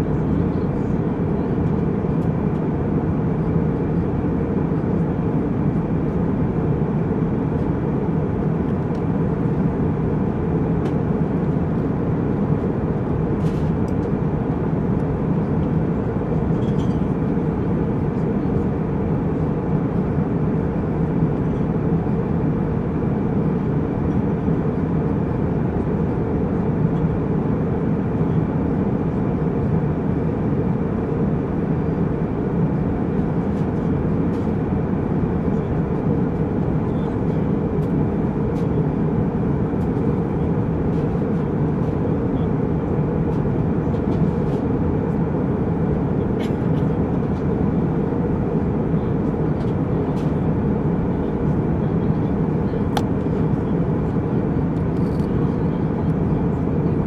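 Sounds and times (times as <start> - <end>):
jet engine and airflow rumble: 0.0 - 57.0.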